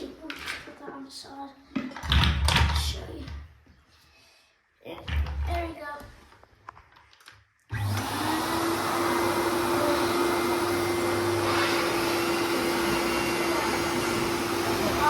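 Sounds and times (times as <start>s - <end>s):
vacuum cleaner motor running: 7.7s - 15.0s.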